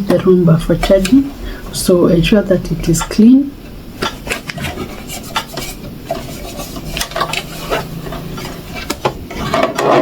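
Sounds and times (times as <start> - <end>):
cloth rubbing on plastic: 4.1 - 9.6.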